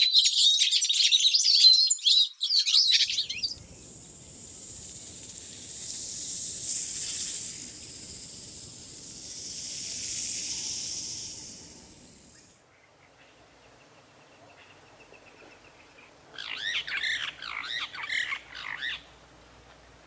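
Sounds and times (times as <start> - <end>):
high-pitched bird chirping: 2.8 - 12.6
long breathy hiss: 3.0 - 12.6.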